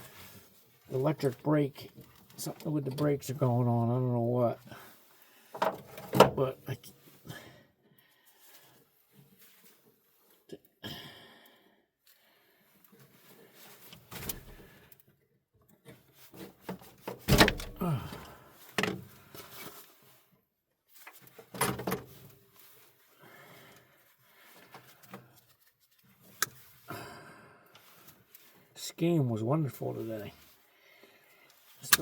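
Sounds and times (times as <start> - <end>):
tools knocking and clunking: 5.6 - 6.4, 17.2 - 17.8.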